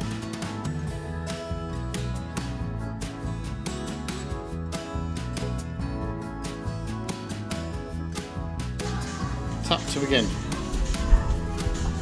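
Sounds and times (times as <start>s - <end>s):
instrumental music with plucked notes: 0.0s - 8.8s.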